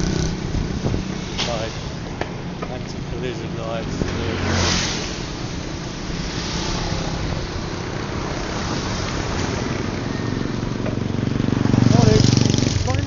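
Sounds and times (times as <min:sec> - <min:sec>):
wind on microphone: 0:00.0 - 0:01.3
road traffic noise: 0:00.0 - 0:13.0.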